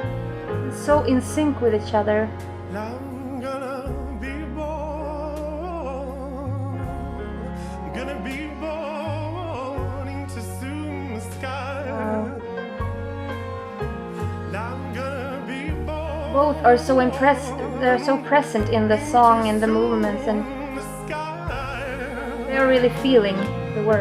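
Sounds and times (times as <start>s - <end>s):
low sustained chords: 0.0s - 24.0s
person singing with vibrato: 7.4s - 12.6s, 14.5s - 24.0s.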